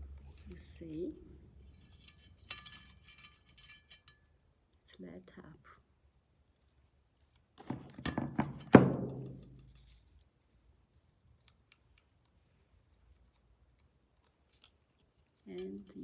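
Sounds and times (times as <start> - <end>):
knocks and clatter on table: 7.6 - 9.8
ringing thump: 7.8 - 9.7.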